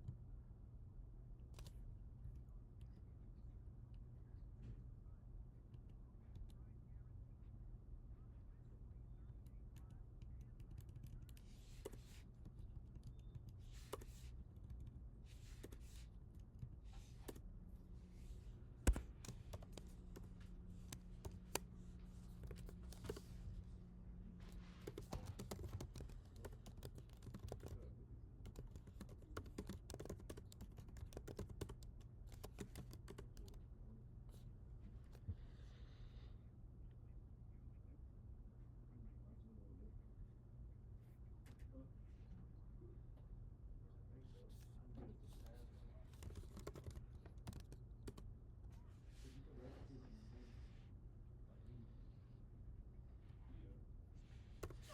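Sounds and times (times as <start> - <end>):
faint low hum: 0.0 - 54.9
typing on computer keyboard: 9.7 - 15.8, 18.9 - 20.3, 24.8 - 33.6, 46.1 - 48.3.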